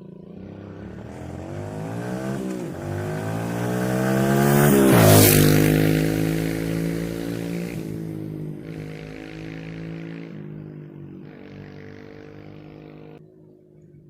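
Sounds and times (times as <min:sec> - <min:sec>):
dirt bike engine running: 0:00.0 - 0:13.2.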